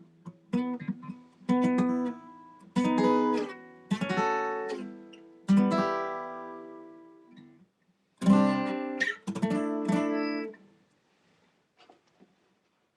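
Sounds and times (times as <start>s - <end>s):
acoustic guitar strumming chords: 0.3s - 7.3s, 8.2s - 10.6s.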